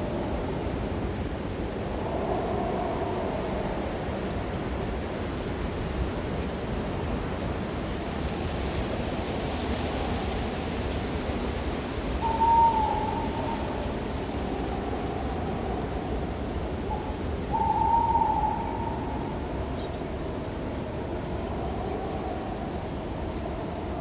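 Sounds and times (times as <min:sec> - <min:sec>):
blowing wind: 0:00.0 - 0:24.0
owl hoot: 0:12.2 - 0:13.9, 0:16.9 - 0:19.4.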